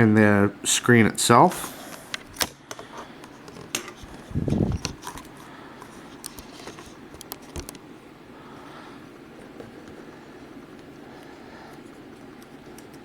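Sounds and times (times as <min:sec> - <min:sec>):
hands clicking and tapping laptop: 0:12.2 - 0:13.0.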